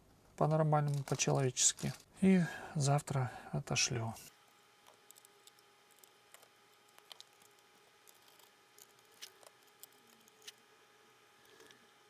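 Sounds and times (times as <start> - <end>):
small clicks and taps: 4.8 - 10.6.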